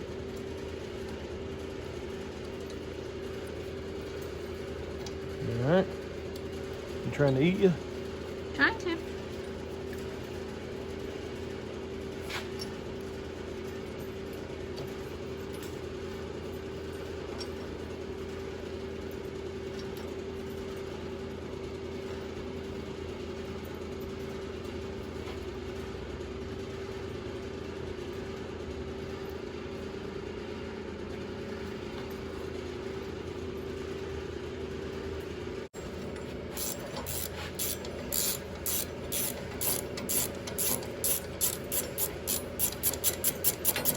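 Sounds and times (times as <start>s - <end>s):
steady machine hum: 28.4s - 43.9s
ratchet wrench clicking: 36.6s - 43.9s.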